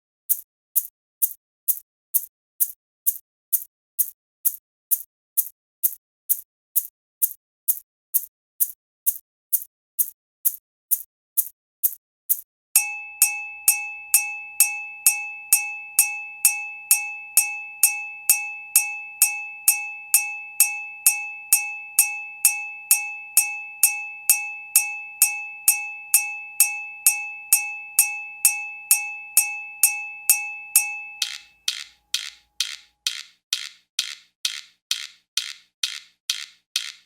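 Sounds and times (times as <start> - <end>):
metallic ringing tone: 12.8 - 31.7
percussion strikes: 12.8 - 37.0.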